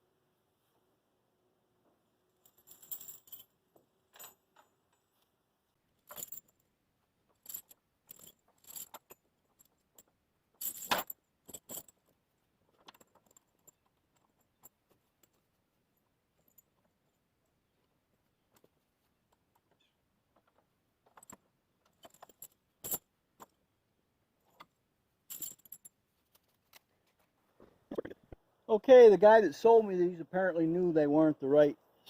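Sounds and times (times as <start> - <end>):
steel tire chains clinking: 7.4 - 12.1.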